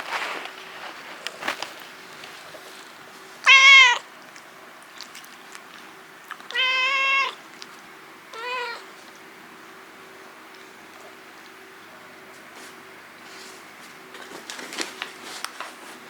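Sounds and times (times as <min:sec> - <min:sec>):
kitten meowing: 0:03.4 - 0:04.0, 0:06.5 - 0:07.4, 0:08.3 - 0:08.9.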